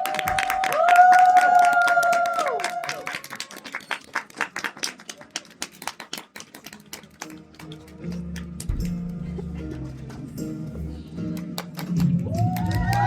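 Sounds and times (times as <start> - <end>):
crowd cheering: 0.0 - 5.8, 12.1 - 13.0
audience clapping: 0.0 - 10.5, 11.3 - 13.0.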